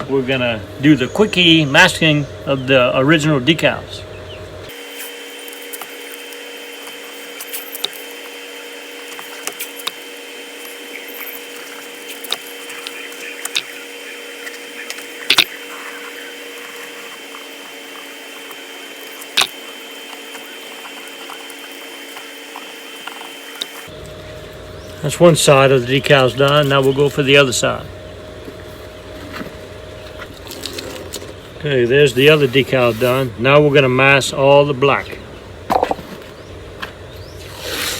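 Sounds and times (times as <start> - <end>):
steady machine hum: 0.0 - 37.9
masking tape clicks and crackles: 4.7 - 24.6.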